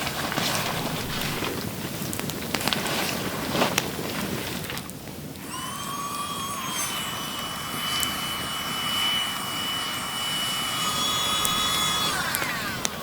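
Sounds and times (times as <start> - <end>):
high-pitched whistle: 5.4 - 13.0.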